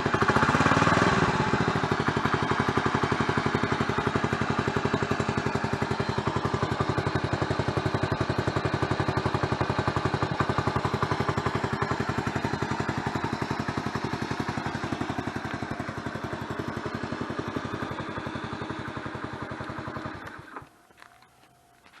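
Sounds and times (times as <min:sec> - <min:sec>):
motorcycle engine idling: 0:00.0 - 0:22.0.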